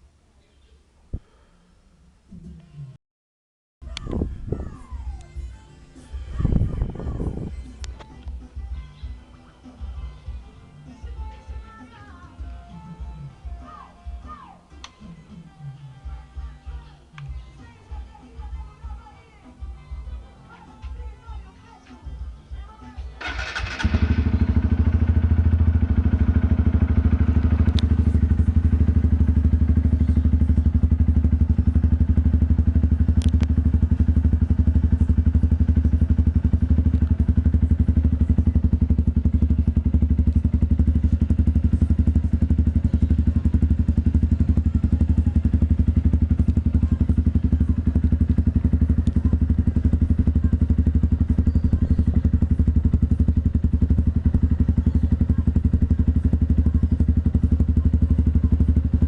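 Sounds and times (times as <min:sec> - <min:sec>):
motorcycle engine idling: 0:16.1 - 0:59.0.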